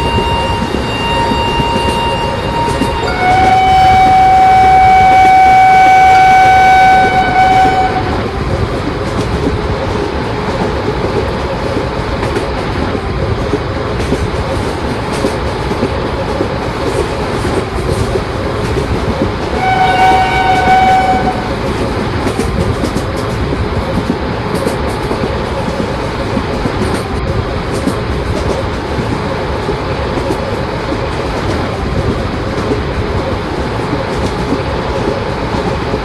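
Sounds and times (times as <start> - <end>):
train horn blast: 0.0 - 8.4, 19.5 - 21.7
electric train running on track: 0.0 - 36.0.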